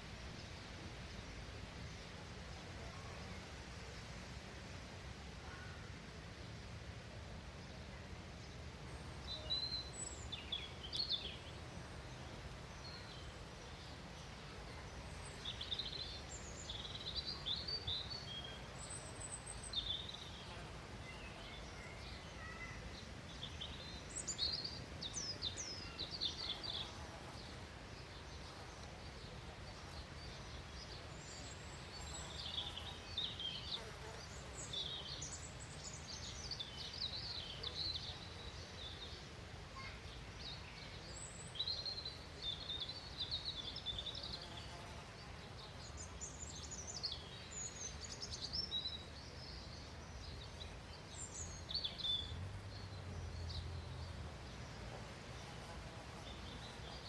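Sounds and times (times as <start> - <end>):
songbirds chirping and trilling: 8.9 - 57.0.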